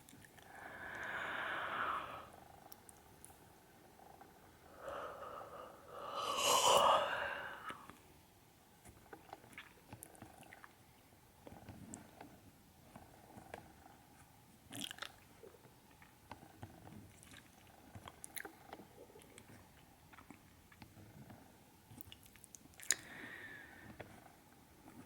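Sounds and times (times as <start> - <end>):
soft clicks and crackles: 11.4 - 14.2.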